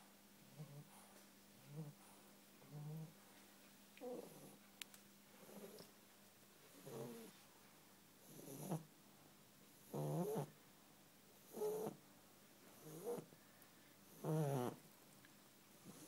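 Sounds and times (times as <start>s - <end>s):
dog snoring: 2.6s - 3.2s, 6.8s - 7.4s, 8.2s - 8.9s, 9.8s - 10.5s, 11.4s - 12.0s, 12.8s - 13.3s, 14.1s - 14.8s.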